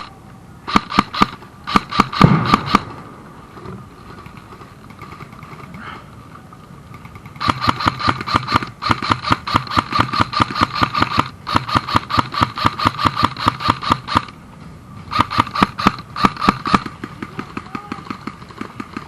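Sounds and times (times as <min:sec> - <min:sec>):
airsoft gun automatic fire: 0:00.7 - 0:03.1, 0:07.0 - 0:14.3, 0:15.1 - 0:19.0.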